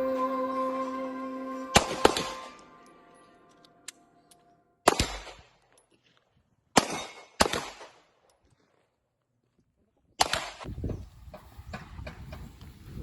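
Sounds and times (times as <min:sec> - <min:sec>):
rifle shots with echo: 0:01.8 - 0:02.6, 0:04.8 - 0:05.6, 0:06.7 - 0:08.1.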